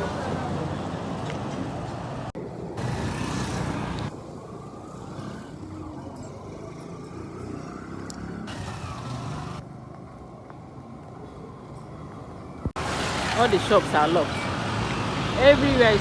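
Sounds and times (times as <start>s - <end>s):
motor vehicle passing: 2.8s - 10.0s.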